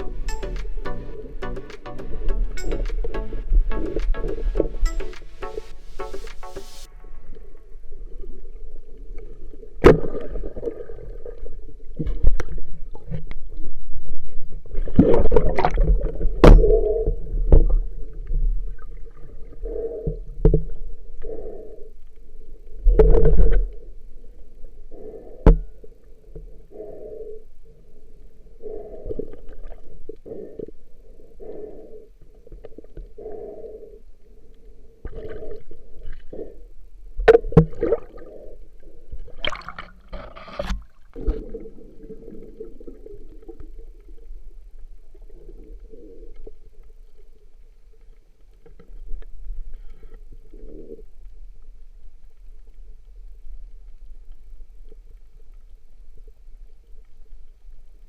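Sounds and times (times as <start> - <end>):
water sloshing and gurgling: 35.0 - 51.0.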